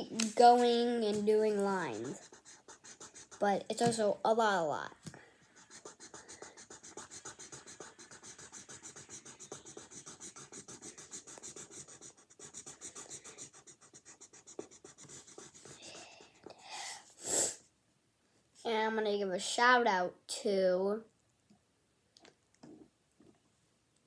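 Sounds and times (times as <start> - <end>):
marker scribbling on paper: 0.2 - 4.2, 5.0 - 16.5.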